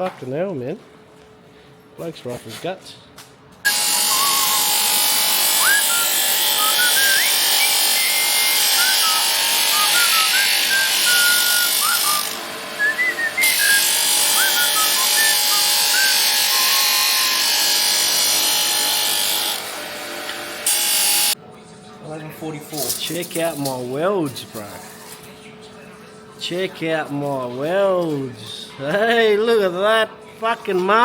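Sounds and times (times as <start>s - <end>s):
welding arc sizzling: 3.7s - 21.4s.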